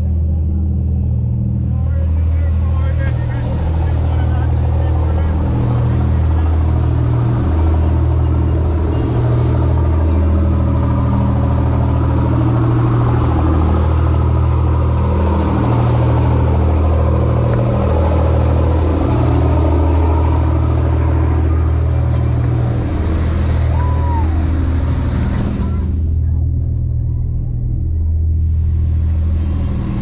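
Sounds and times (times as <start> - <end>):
boat engine drone: 0.0 - 30.0
rushing water noise: 2.0 - 25.7.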